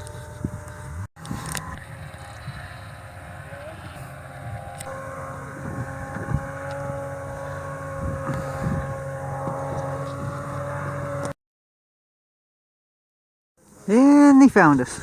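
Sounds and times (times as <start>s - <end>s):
wind rumbling on microphone: 0.0s - 11.3s
snowmobile engine running: 0.0s - 11.4s.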